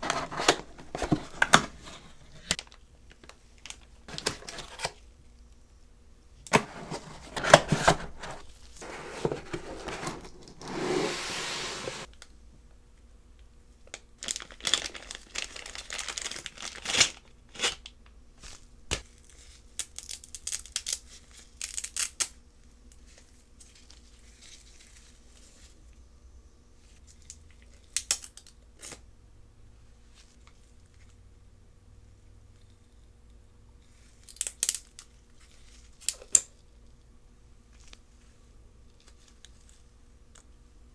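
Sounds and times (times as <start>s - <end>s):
packaging crinkling and tearing: 3.6s - 5.0s, 14.2s - 17.9s
rustling: 6.5s - 12.1s.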